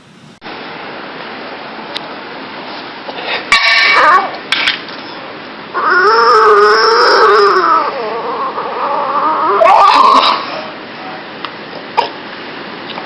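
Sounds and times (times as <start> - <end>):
dog howling: 3.8 - 4.4, 5.7 - 10.5.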